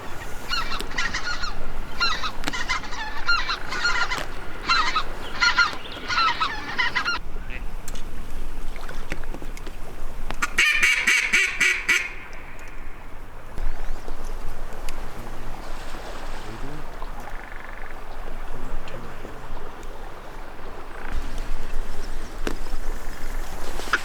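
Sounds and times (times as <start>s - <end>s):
geese chattering calls: 0.0s - 7.7s, 10.4s - 13.0s
geese honking: 0.0s - 7.7s, 10.4s - 13.0s.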